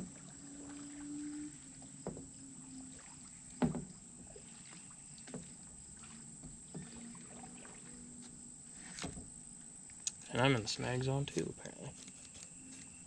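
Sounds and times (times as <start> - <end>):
faint steady background noise: 0.0 - 13.0
knocks and taps on kayak: 3.6 - 4.0.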